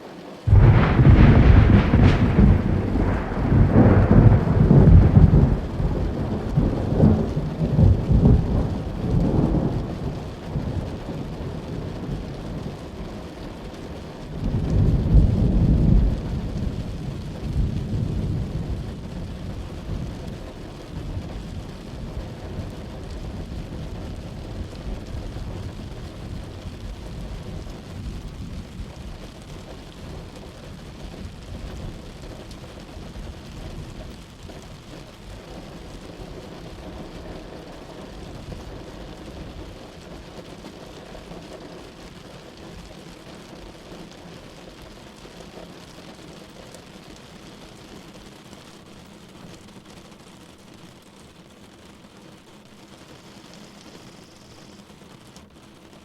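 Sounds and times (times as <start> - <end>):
steady rain: 0.0 - 56.0
thunder rumbling: 0.5 - 44.3.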